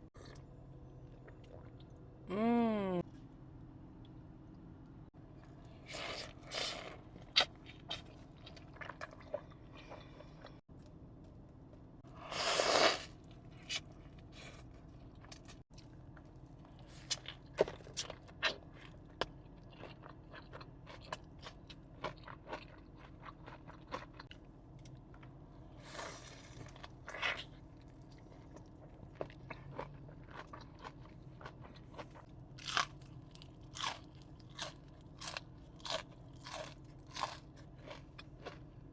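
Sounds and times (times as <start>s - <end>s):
crunchy chewing: 17.0s - 24.4s, 25.8s - 38.7s.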